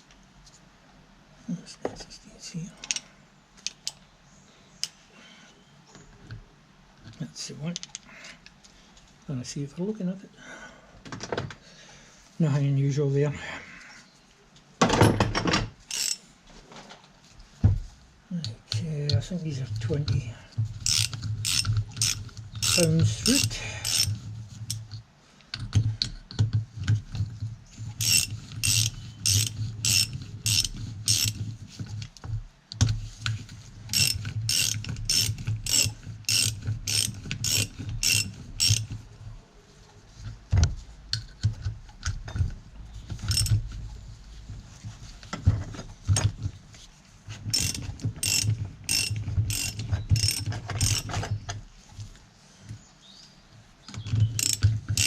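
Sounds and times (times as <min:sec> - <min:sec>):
ratchet wrench clicking: 0:15.9 - 0:16.2, 0:20.8 - 0:24.9, 0:27.9 - 0:31.5, 0:33.9 - 0:39.0, 0:43.2 - 0:43.6, 0:47.5 - 0:51.3, 0:54.3 - 0:55.0.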